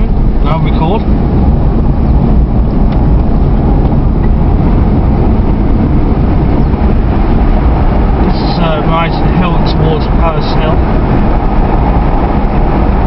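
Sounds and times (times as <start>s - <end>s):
car road and engine noise: 0.0s - 13.0s.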